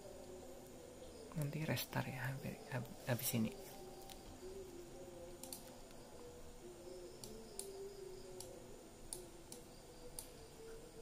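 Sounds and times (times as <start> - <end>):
faint low hum: 0.0 - 11.0
computer mouse clicks: 5.4 - 6.0, 7.2 - 10.4.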